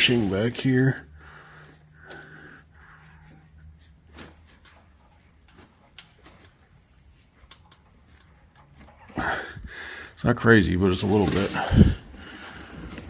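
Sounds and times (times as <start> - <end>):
faint clicks and light knocks: 4.4 - 9.0.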